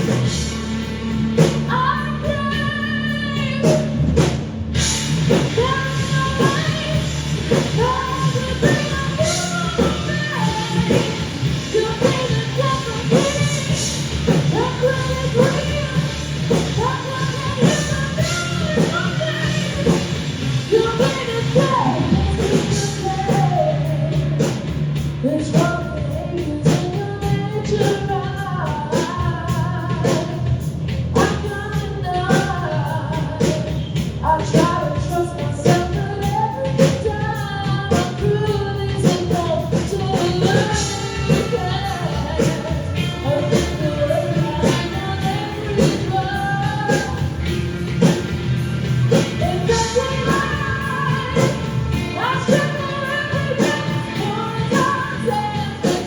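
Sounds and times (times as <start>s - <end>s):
live rock band: 0.0s - 56.0s
person singing: 5.3s - 24.6s, 31.2s - 48.2s, 49.1s - 56.0s.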